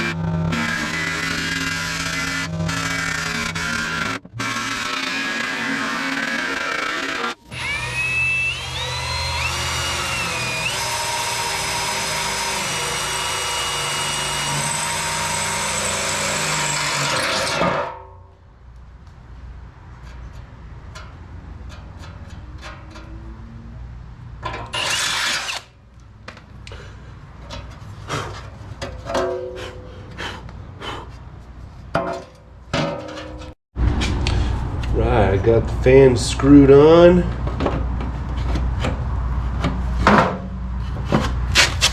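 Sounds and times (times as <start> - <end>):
power drill running: 0.0 - 17.6, 24.8 - 25.7.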